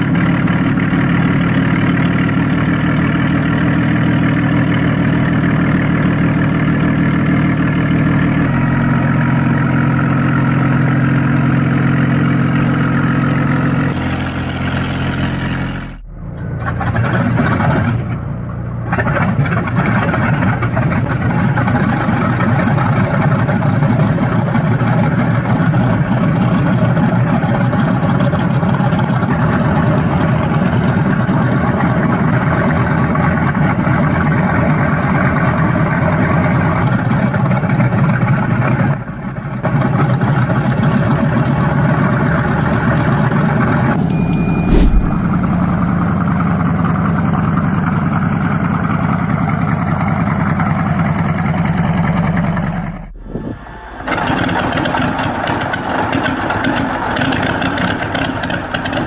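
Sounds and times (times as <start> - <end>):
aircraft engine running: 0.0 - 22.8.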